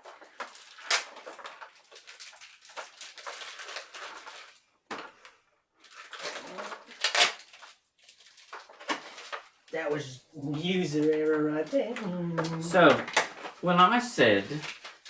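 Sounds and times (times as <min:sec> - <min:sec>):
packaging rustling and crinkling: 0:00.0 - 0:15.0
sharp plastic clacks: 0:10.9 - 0:13.6.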